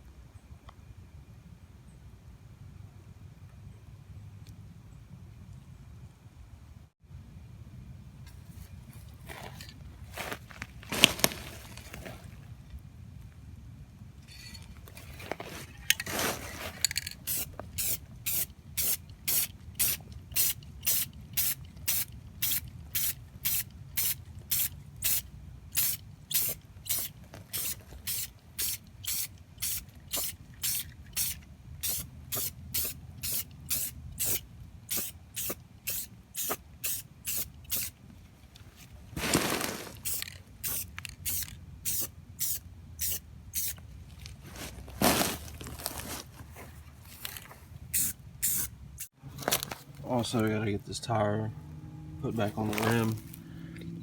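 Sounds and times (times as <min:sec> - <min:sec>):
spray can hissing: 0:17.2 - 0:25.2, 0:25.8 - 0:37.9, 0:39.2 - 0:43.8, 0:48.0 - 0:48.7.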